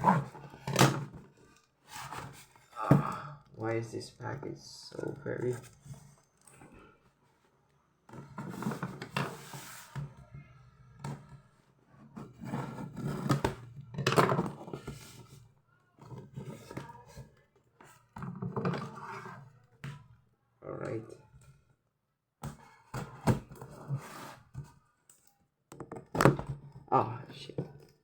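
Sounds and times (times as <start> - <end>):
packaging rustling and scraping: 0.0 - 2.8.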